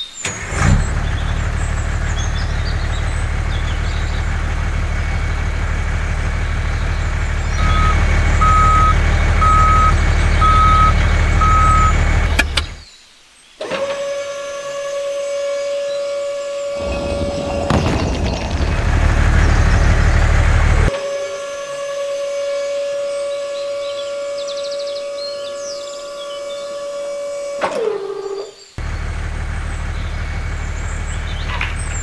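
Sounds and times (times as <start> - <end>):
truck engine running: 0.2 - 12.8, 16.8 - 21.0, 28.8 - 32.0
reversing alarm beeping: 7.6 - 12.5.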